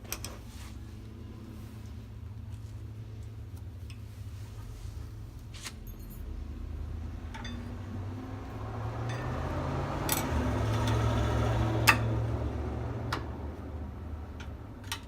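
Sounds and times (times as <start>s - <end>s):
metallic clicks of hand tools: 10.0s - 11.1s.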